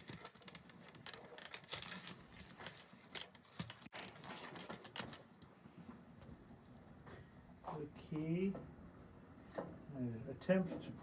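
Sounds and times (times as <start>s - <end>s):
burning plastic crackling and ticking: 0.0s - 5.4s.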